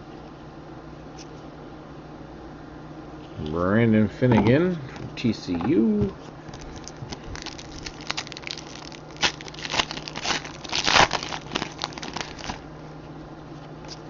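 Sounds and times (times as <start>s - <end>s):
card packs crinkling and rustling: 5.2s - 12.6s.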